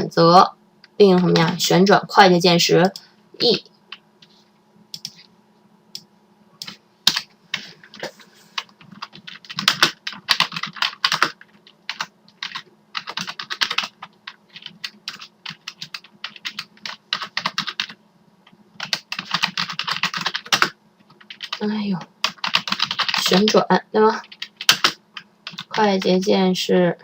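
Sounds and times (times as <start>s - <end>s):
faint steady hum: 0.0s - 27.0s
keyboard typing: 4.9s - 5.2s, 6.0s - 18.0s, 18.8s - 23.6s, 24.2s - 26.3s.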